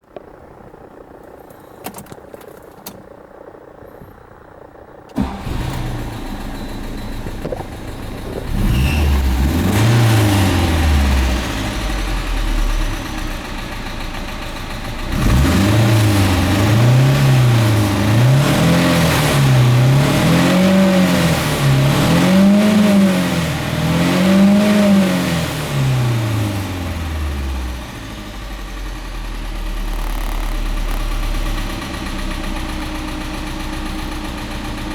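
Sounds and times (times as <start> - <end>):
car engine starting and idling: 0.0 - 34.9
engine revving in blips: 5.1 - 28.6.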